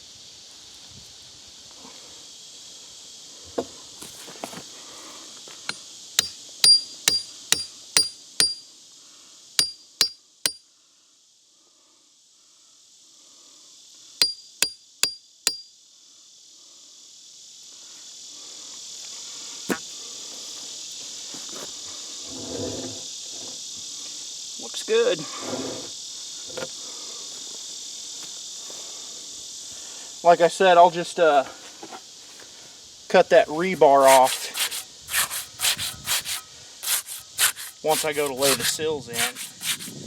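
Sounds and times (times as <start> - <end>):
insects droning: 0.0 - 40.0
hammer striking metal bolt: 6.2 - 8.6.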